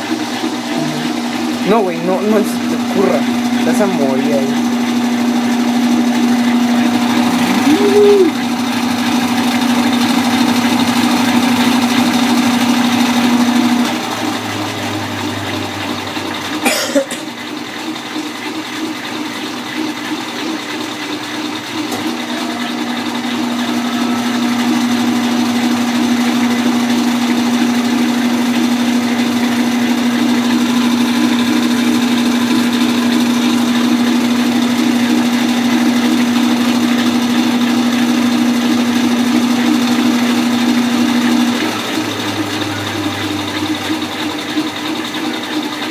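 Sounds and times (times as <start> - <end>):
washing machine churning: 0.0 - 45.9
washing machine motor hum: 0.0 - 45.9.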